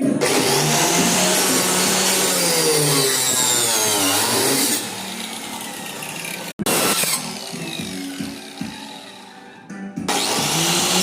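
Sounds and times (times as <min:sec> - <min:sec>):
electric power tool running: 0:00.2 - 0:09.5, 0:10.1 - 0:11.0.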